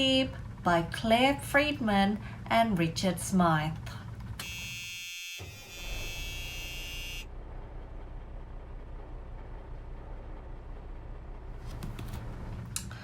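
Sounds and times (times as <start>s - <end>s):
low rumble of vehicle: 0.0s - 13.0s
buzzing electronic tone: 4.4s - 7.3s.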